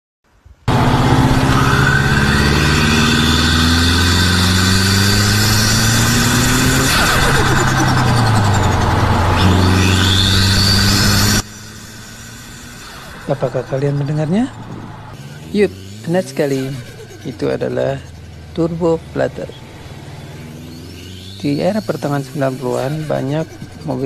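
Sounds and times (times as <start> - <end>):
car engine accelerating hard: 0.6 - 24.0
turbo whistle: 1.4 - 14.9, 19.5 - 24.0
turbo flutter chatter: 4.8 - 24.0.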